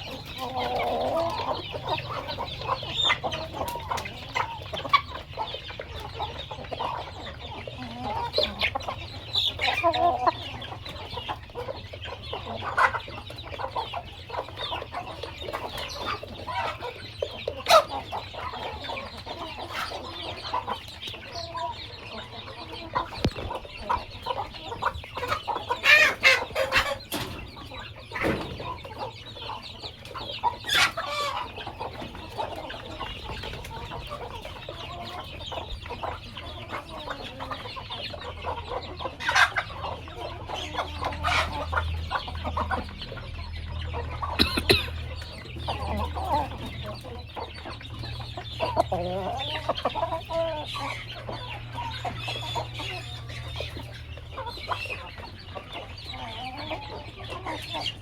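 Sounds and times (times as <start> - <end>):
chickens clucking: 0.0 - 58.0.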